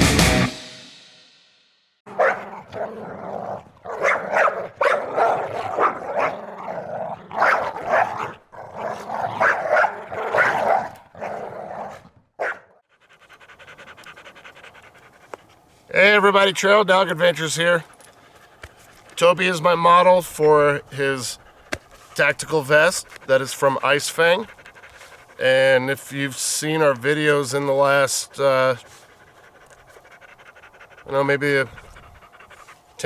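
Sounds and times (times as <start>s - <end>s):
dog barking: 2.1s - 3.0s, 3.9s - 6.7s, 7.3s - 12.8s
dog panting: 12.8s - 33.0s.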